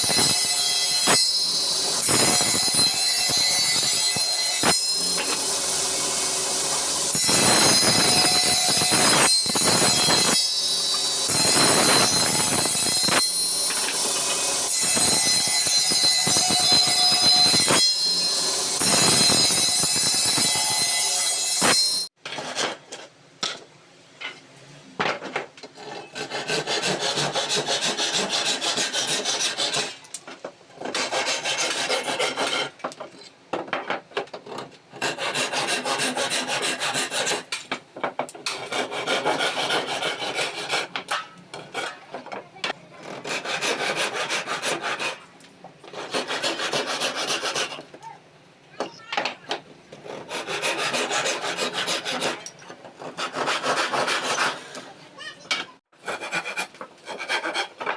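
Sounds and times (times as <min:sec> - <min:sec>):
rasping strokes across wood: 0:25.7 - 0:30.0, 0:30.8 - 0:32.8, 0:34.4 - 0:37.6, 0:38.4 - 0:42.3, 0:42.9 - 0:47.9, 0:49.9 - 0:54.9, 0:56.0 - 0:57.9.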